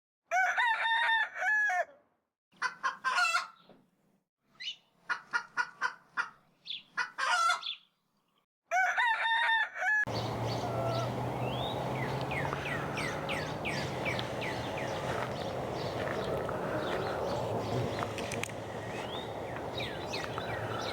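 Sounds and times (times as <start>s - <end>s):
rooster crowing: 0.3s - 1.9s, 8.7s - 20.9s
hens clucking: 10.1s - 20.9s
low hum: 10.1s - 20.9s
small bird chirping: 10.1s - 20.9s.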